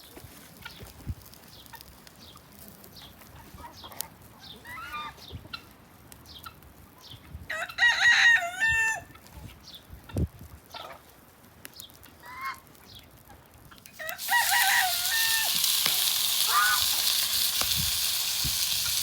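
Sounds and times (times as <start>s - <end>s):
rooster crowing: 7.5s - 9.1s, 13.9s - 15.8s, 16.4s - 17.0s
fowl call: 14.0s - 17.3s.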